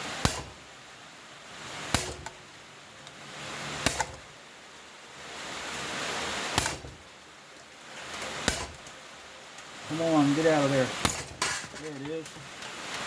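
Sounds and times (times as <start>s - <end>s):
rushing hiss: 0.0s - 13.0s
hammer striking metal: 0.2s - 0.6s, 1.9s - 2.4s, 3.8s - 4.3s, 6.6s - 7.0s, 8.5s - 8.9s, 11.0s - 11.9s.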